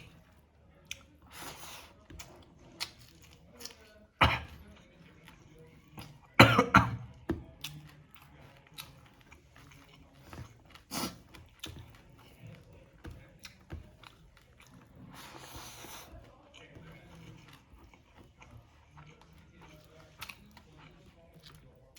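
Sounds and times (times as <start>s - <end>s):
faint eating clicks: 0.0s - 1.3s, 7.2s - 21.9s
person coughing: 4.2s - 4.6s, 6.4s - 7.1s.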